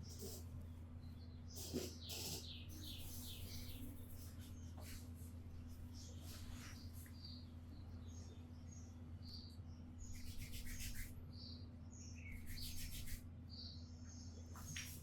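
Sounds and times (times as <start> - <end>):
small birds chirping: 0.0 - 15.0
scratchy rubbing of hair: 10.2 - 11.1, 12.4 - 13.2.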